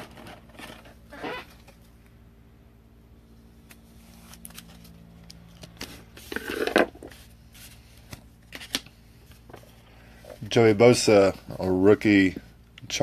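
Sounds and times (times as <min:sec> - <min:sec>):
cards and wrappers rustling: 0:03.7 - 0:09.7.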